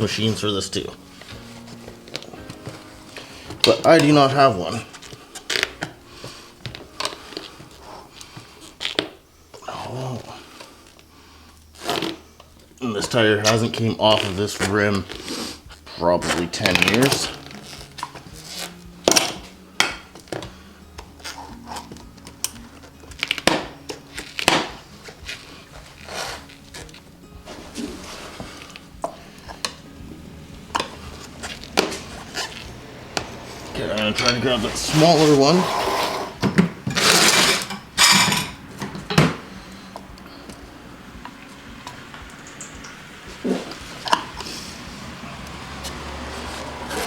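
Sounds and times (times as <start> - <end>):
pry bars scraping wheel rim: 33.5 - 38.1
metal hand tools clattering: 33.9 - 35.6, 36.5 - 39.4.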